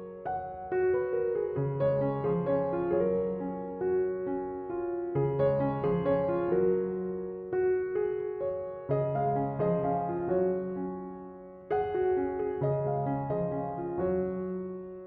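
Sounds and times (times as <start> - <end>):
gentle piano music: 0.0 - 15.0.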